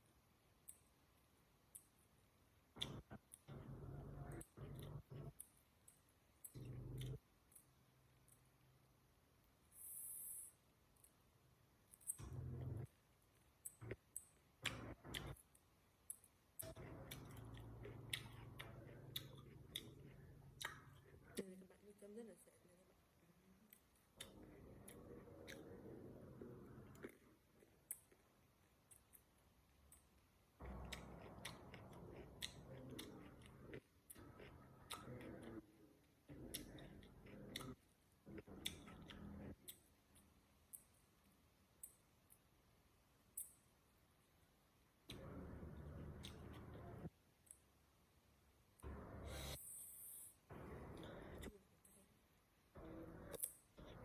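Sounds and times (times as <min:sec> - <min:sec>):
faint low hum: 0:00.0 - 0:54.0
person chewing food: 0:00.6 - 0:08.6, 0:11.8 - 0:21.4, 0:23.7 - 0:42.5, 0:45.0 - 0:47.7
wet mouth clicks: 0:02.8 - 0:08.4, 0:13.6 - 0:21.5, 0:30.7 - 0:40.9.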